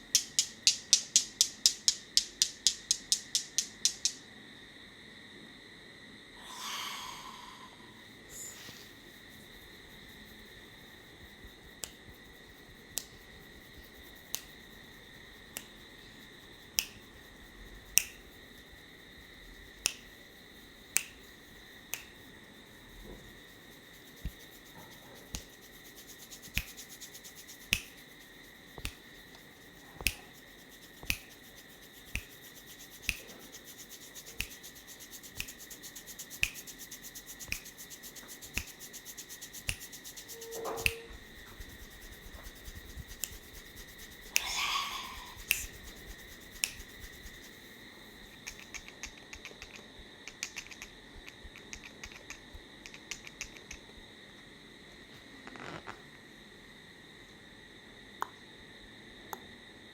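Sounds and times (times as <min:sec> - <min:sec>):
sharp snaps or clicks: 0:00.1 - 0:04.2, 0:09.7 - 0:22.4, 0:24.0 - 0:53.9
steady high-pitched tone: 0:37.4 - 0:47.6.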